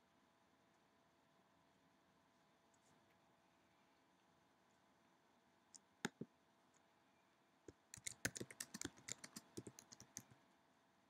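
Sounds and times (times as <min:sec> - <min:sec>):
computer keyboard typing: 0:07.9 - 0:10.4.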